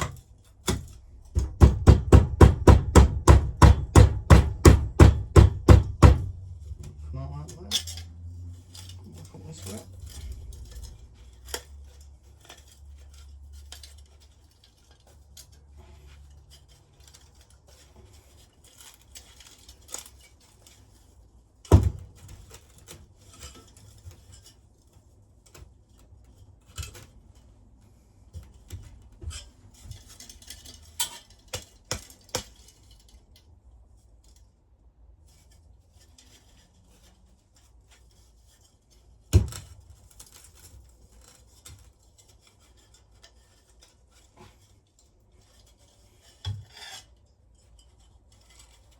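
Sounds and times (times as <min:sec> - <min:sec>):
metallic clinks and knocks: 0:07.5 - 0:12.7.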